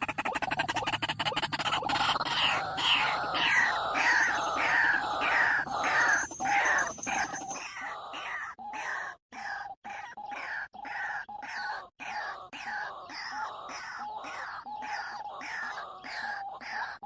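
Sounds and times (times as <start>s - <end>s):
waterhen calling: 0.0s - 9.2s.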